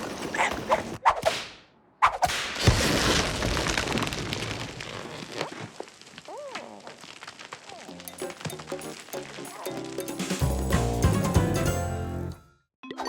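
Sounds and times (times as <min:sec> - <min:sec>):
whip-like snaps: 0:01.1 - 0:02.6.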